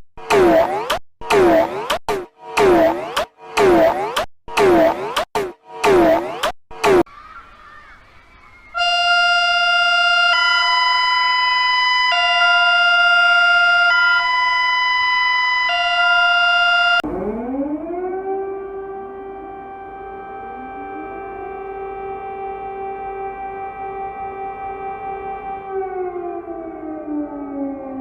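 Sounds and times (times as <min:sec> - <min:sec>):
two-tone electronic alert: 0:00.2 - 0:07.0, 0:08.8 - 0:17.0
siren winding up: 0:00.2 - 0:07.1, 0:08.7 - 0:28.0.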